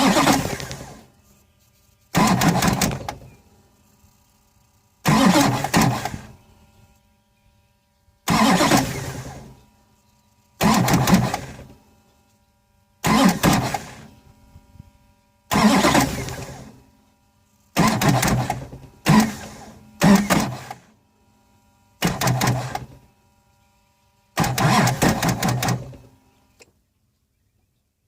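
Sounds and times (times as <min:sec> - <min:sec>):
engine cranking on starter: 0:00.0 - 0:01.1, 0:02.1 - 0:03.4, 0:05.0 - 0:06.4, 0:08.2 - 0:09.6, 0:10.6 - 0:11.8, 0:13.0 - 0:14.2, 0:15.5 - 0:16.8, 0:17.7 - 0:21.0, 0:22.0 - 0:23.1, 0:24.4 - 0:26.1.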